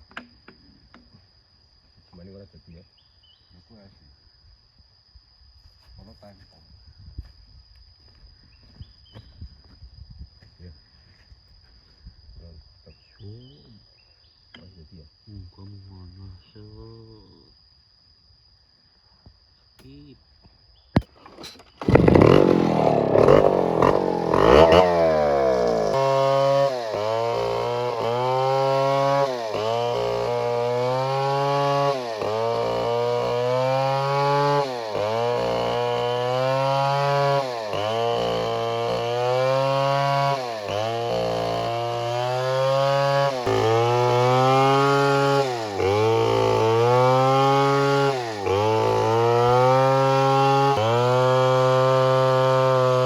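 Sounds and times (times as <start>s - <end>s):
chainsaw engine running: 21.2s - 53.0s.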